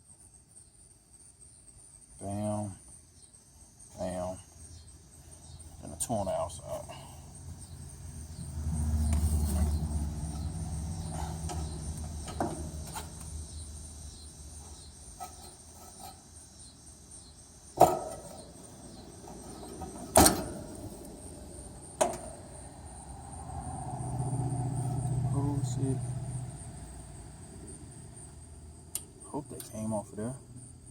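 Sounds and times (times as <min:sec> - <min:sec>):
high insect drone: 0:00.0 - 0:30.9
sharp metallic clicks: 0:28.9 - 0:29.8.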